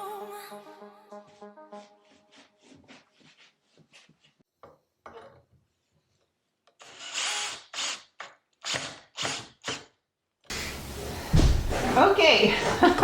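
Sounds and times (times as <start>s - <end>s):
power drill bursts: 6.8s - 9.8s.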